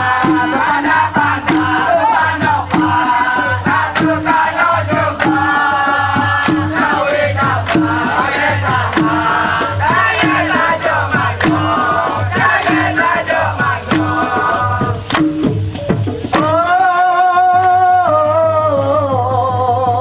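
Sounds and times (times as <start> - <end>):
live band playing: 13.6 - 18.0
person singing: 15.8 - 20.0.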